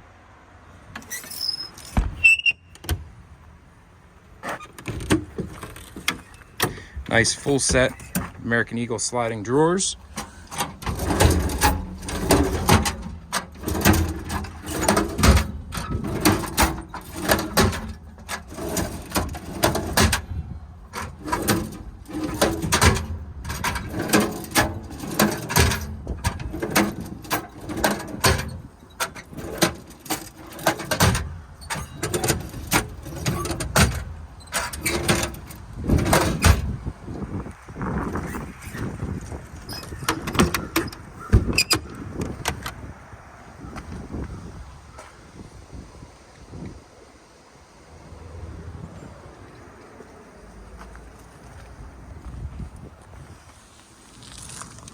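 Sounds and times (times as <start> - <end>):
metal drawers clanking and rattling: 0.9 - 3.5, 4.3 - 37.0, 38.2 - 42.8.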